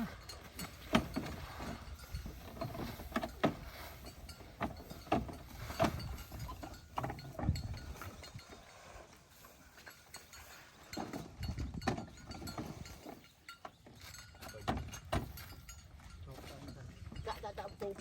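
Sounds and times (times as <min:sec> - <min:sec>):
hand tools clinking on metal: 0:09.7 - 0:18.0.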